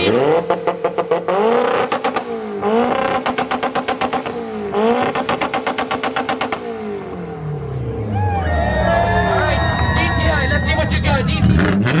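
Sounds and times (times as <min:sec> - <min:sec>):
engine revving on rev limiter: 0:00.0 - 0:07.9, 0:11.4 - 0:12.0.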